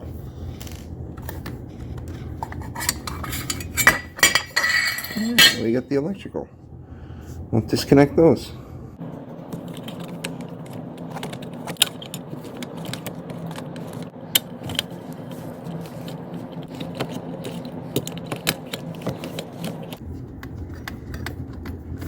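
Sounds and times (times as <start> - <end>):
steady low hum: 0.0 - 22.0
small metal clicks and scrapes: 9.6 - 14.9.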